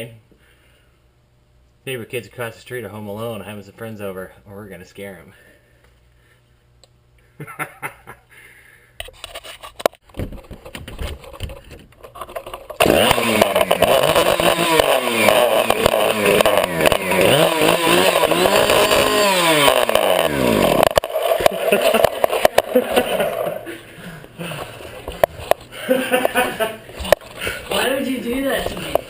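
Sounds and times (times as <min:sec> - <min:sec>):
chainsaw engine revving: 0:12.8 - 0:23.7.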